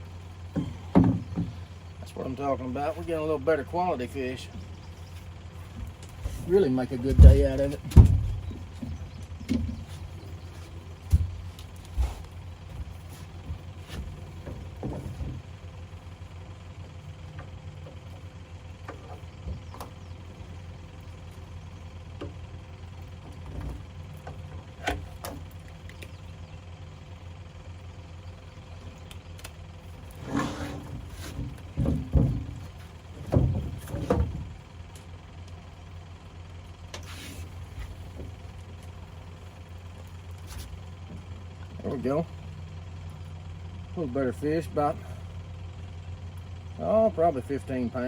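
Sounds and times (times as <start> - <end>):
boat motor running: 0.0 - 48.0.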